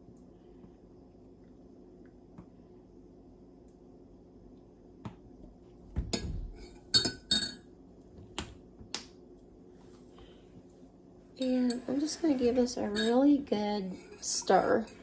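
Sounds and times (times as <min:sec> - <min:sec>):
spoon clinking against a mug: 0:07.0 - 0:07.6, 0:11.5 - 0:15.0.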